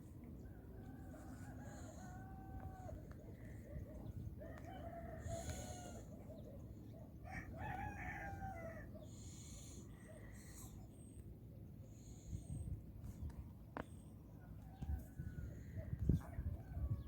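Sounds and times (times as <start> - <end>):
long drawn-out animal calls: 4.6 - 6.3.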